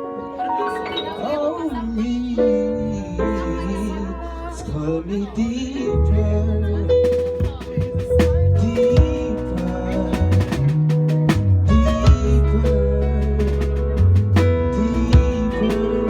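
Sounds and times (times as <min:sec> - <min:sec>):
guitar or keyboard chords: 0:00.0 - 0:16.0
bass notes: 0:01.2 - 0:16.0
drum kit with cymbal hits: 0:06.9 - 0:16.0.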